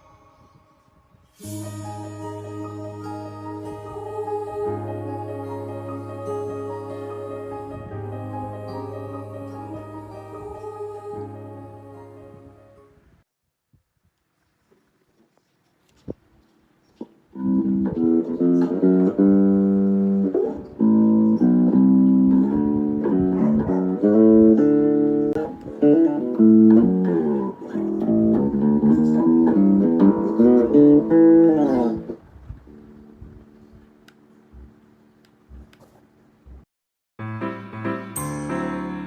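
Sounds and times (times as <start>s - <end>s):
guitar plucked notes and chords: 17.4s - 32.2s.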